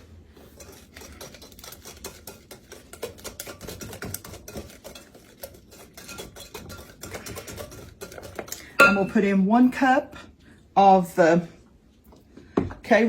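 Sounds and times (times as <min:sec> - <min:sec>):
whisk clicking against bowl: 0:00.6 - 0:08.7.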